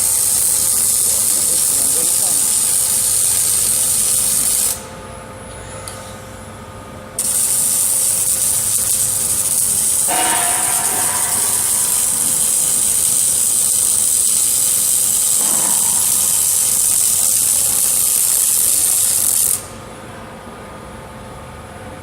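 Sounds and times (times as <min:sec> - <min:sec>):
welding arc hissing: 0:00.0 - 0:04.9, 0:07.2 - 0:19.7
machine hum: 0:08.2 - 0:17.7.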